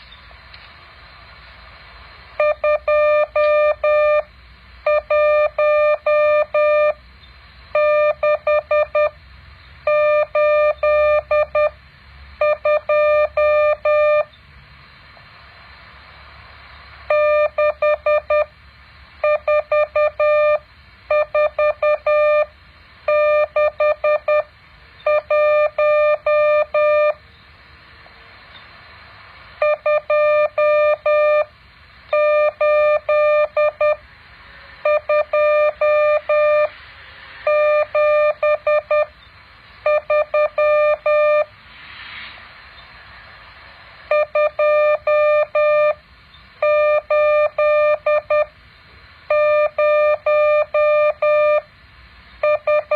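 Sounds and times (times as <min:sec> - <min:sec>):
faint hiss: 0:00.0 - 0:52.9
morse code beeps: 0:02.4 - 0:04.3, 0:04.9 - 0:07.0, 0:07.8 - 0:09.2, 0:09.9 - 0:11.8, 0:12.4 - 0:14.3, 0:17.1 - 0:18.5, 0:19.2 - 0:22.5, 0:23.1 - 0:27.2, 0:29.6 - 0:31.5, 0:32.1 - 0:34.0, 0:34.8 - 0:36.7, 0:37.5 - 0:39.1, 0:39.8 - 0:41.5, 0:44.1 - 0:46.0, 0:46.6 - 0:48.5, 0:49.3 - 0:51.7, 0:52.4 - 0:52.9.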